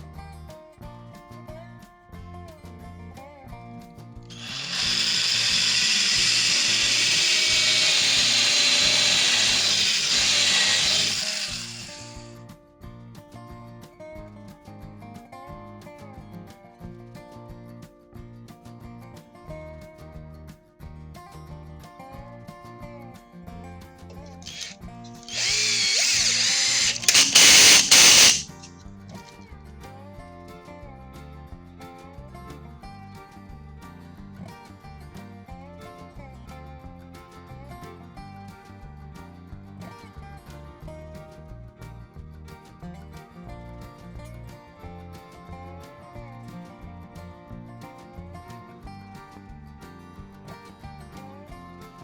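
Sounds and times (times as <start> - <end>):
workshop tool whirring: 4.3 - 12.3, 24.2 - 28.7.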